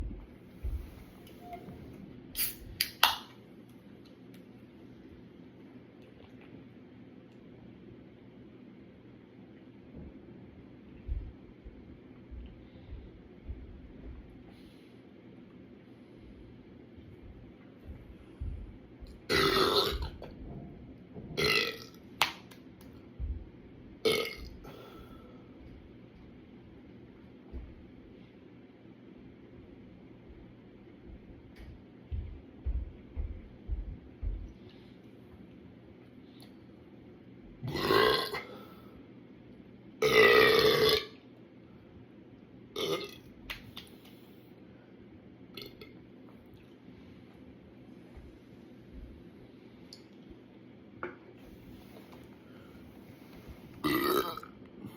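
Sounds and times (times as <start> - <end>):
person burping loudly: 19.3 - 20.1, 21.4 - 21.9, 24.1 - 24.5, 37.7 - 38.5, 40.0 - 41.2, 53.8 - 54.5.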